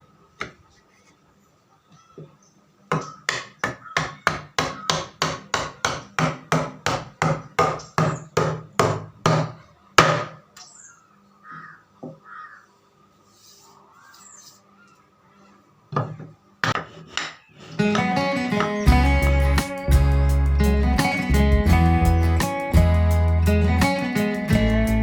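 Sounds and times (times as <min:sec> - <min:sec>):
hammer striking wood: 0:02.9 - 0:10.4.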